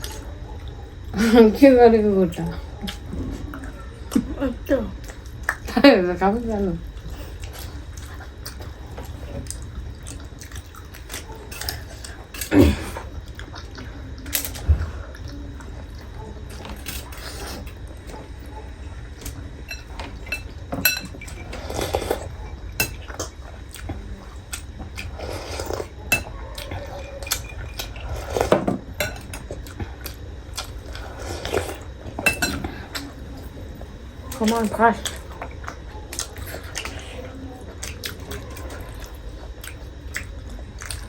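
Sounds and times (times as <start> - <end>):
cutlery clinking against dishes: 19.7 - 21.5, 32.2 - 32.7.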